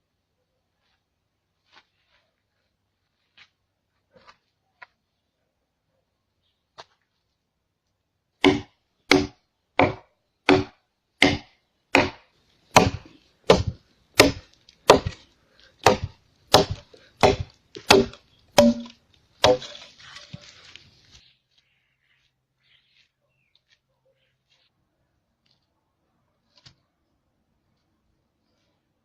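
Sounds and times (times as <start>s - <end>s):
tool chopping wood: 8.4s - 19.9s.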